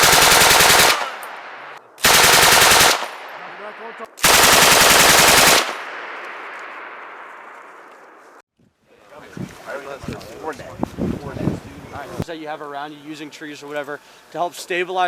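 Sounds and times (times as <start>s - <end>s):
machine gun bursts: 0.0s - 1.1s, 2.0s - 3.1s, 4.2s - 5.8s
gunfire echo: 0.0s - 8.3s.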